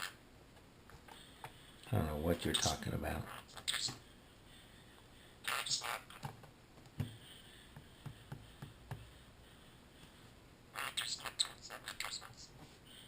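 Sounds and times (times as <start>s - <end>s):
clicks and taps: 6.2s - 9.1s.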